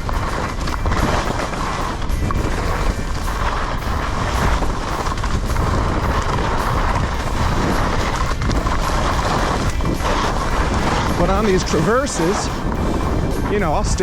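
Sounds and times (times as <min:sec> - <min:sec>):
skis hissing on snow: 0:00.0 - 0:14.0
wind buffeting microphone: 0:00.0 - 0:14.0.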